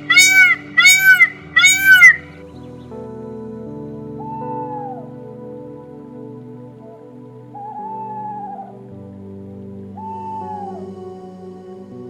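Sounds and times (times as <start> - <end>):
cat meowing: 0.0 - 2.2
background music: 0.0 - 12.0.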